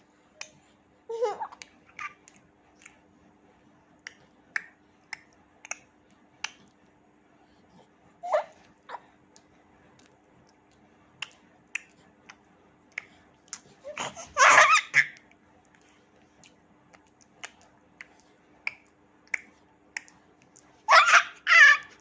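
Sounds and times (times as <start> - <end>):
baby laughing and babbling: 1.1 - 2.4, 8.2 - 9.1, 13.8 - 15.2, 20.9 - 22.0.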